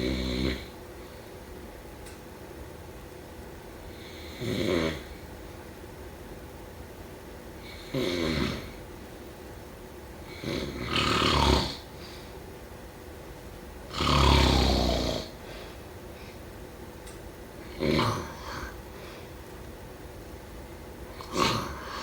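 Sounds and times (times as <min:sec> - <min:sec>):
snoring: 0:00.0 - 0:00.7, 0:03.9 - 0:05.2, 0:07.6 - 0:08.8, 0:10.2 - 0:11.9, 0:13.9 - 0:15.4, 0:17.6 - 0:18.8, 0:21.1 - 0:22.0.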